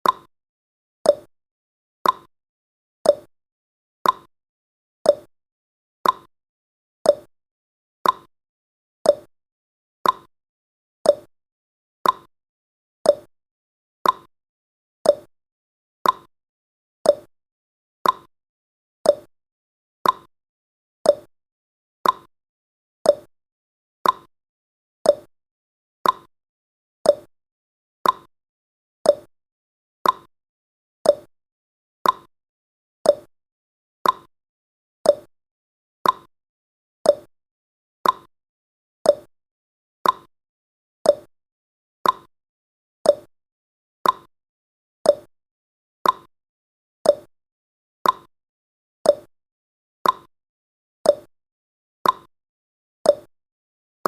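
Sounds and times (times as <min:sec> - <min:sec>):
timer clicking: 0:00.0 - 0:00.3, 0:01.1 - 0:01.3, 0:02.0 - 0:02.3, 0:03.1 - 0:03.3, 0:04.0 - 0:04.3, 0:05.1 - 0:05.3, 0:06.0 - 0:06.3, 0:07.1 - 0:07.3, 0:08.0 - 0:08.3, 0:09.1 - 0:09.3, 0:10.0 - 0:10.3, 0:11.1 - 0:11.3, 0:12.0 - 0:12.3, 0:13.1 - 0:13.3, 0:14.0 - 0:14.3, 0:15.0 - 0:15.3, 0:16.0 - 0:16.3, 0:17.0 - 0:17.3, 0:18.0 - 0:18.3, 0:19.0 - 0:19.3, 0:20.0 - 0:20.3, 0:21.0 - 0:21.3, 0:22.0 - 0:22.3, 0:23.0 - 0:23.3, 0:24.0 - 0:24.3, 0:25.0 - 0:25.3, 0:26.0 - 0:26.3, 0:27.0 - 0:27.3, 0:28.0 - 0:28.3, 0:29.0 - 0:29.3, 0:30.0 - 0:30.3, 0:31.0 - 0:31.3, 0:32.0 - 0:32.3, 0:33.0 - 0:33.3, 0:34.0 - 0:34.3, 0:35.0 - 0:35.3, 0:36.0 - 0:36.3, 0:37.0 - 0:37.3, 0:38.0 - 0:38.3, 0:39.0 - 0:39.3, 0:40.0 - 0:40.3, 0:41.0 - 0:41.3, 0:42.0 - 0:42.3, 0:43.0 - 0:43.3, 0:44.0 - 0:44.3, 0:45.1 - 0:45.3, 0:46.0 - 0:46.3, 0:47.0 - 0:47.3, 0:48.0 - 0:48.3, 0:49.1 - 0:49.3, 0:50.0 - 0:50.3, 0:51.1 - 0:51.3, 0:52.0 - 0:52.3, 0:53.1 - 0:53.3.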